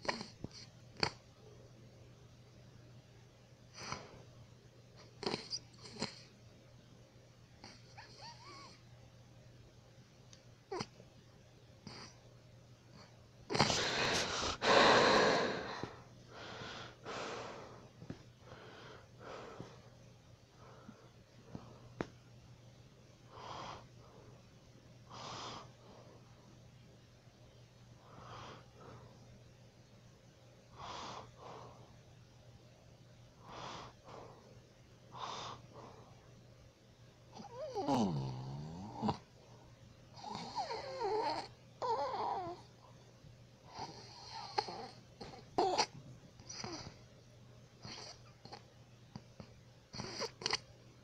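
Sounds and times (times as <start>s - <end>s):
steady low hum: 0.0s - 51.0s
person snoring: 13.5s - 16.0s, 37.4s - 39.2s.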